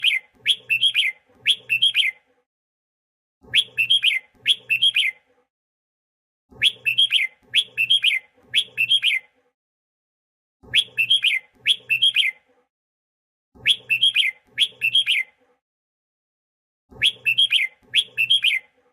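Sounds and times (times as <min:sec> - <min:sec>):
bird singing warbled phrases: 0:00.0 - 0:02.3, 0:03.4 - 0:05.3, 0:06.5 - 0:09.4, 0:10.6 - 0:12.5, 0:13.6 - 0:15.4, 0:16.9 - 0:18.8.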